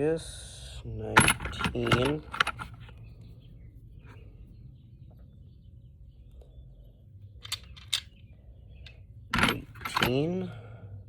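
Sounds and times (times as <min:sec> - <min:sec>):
metal sockets clicking: 0:01.2 - 0:02.9, 0:07.4 - 0:08.1, 0:09.3 - 0:10.3.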